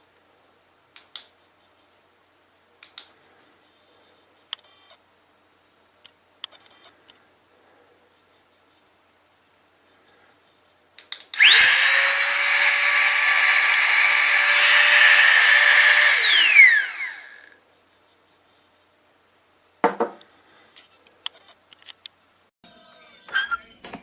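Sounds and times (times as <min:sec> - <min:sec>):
electric air pump whining: 0:11.4 - 0:17.5.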